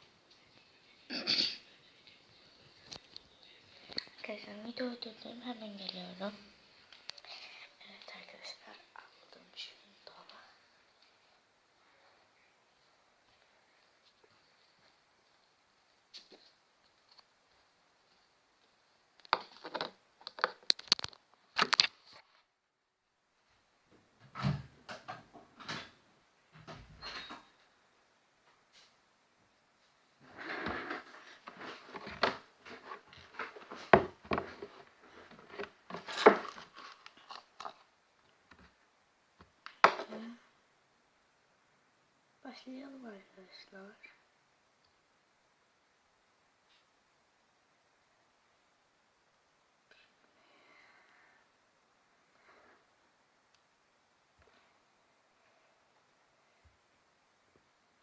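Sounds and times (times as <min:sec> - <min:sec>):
objects rustling and rubbing: 0:12.8 - 0:22.5, 0:29.9 - 0:38.8.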